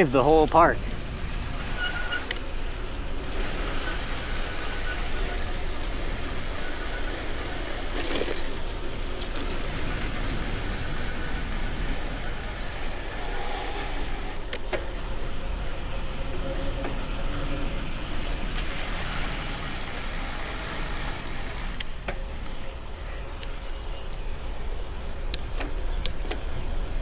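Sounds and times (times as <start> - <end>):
wind rush on microphone: 0.0 - 7.9
bicycle tyres humming on tarmac: 0.0 - 27.0.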